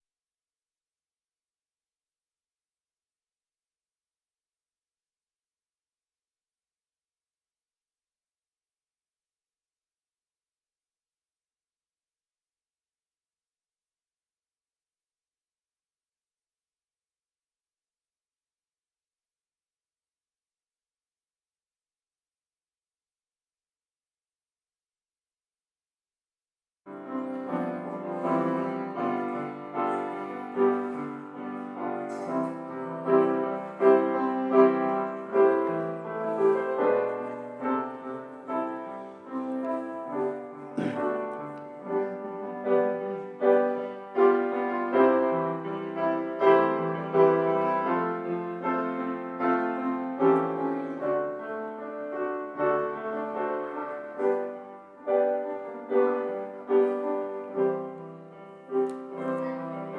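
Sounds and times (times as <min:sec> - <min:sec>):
slow piano piece: 0:26.9 - 0:59.9.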